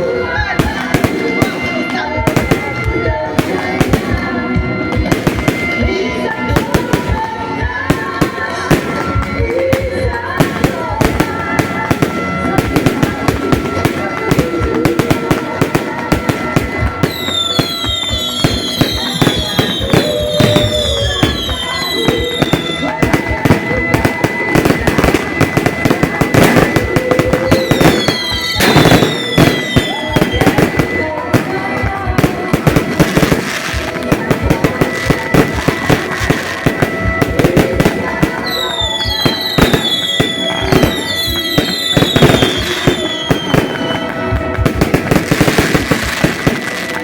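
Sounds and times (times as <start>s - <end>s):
fireworks crackling bangs: 0.0s - 47.0s
falling firework whistles: 17.0s - 30.8s.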